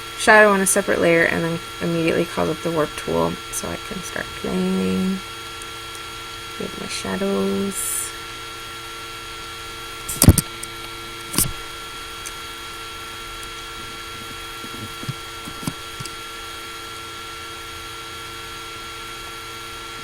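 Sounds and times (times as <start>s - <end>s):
laptop fan whirring: 0.0s - 20.0s
sharp clicks: 10.1s - 11.6s.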